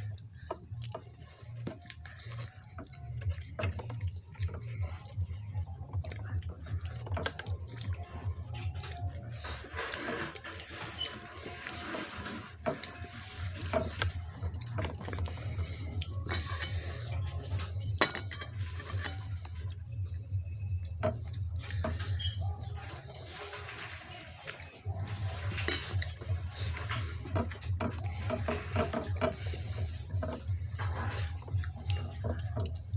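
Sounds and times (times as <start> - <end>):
wet chewing and slurping: 0.0 - 32.9
clicks and clinks on plate: 17.8 - 19.2.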